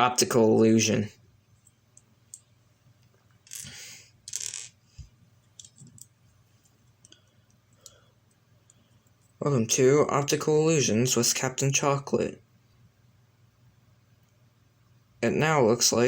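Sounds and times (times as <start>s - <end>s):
plastic pieces clicking: 3.4s - 4.7s
plastic pieces rattling: 3.5s - 4.7s.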